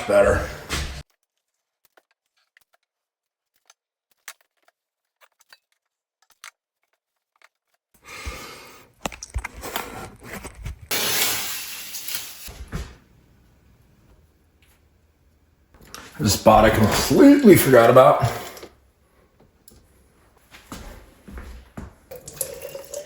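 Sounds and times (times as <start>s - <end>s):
clattering and rustling handling noise: 0.7s - 7.8s, 8.9s - 11.0s.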